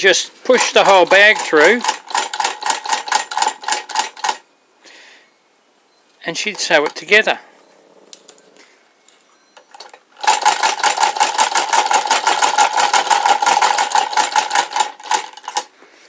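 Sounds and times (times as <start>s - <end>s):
sewing machine clattering: 0.5s - 4.4s, 6.5s - 7.1s, 9.7s - 15.7s.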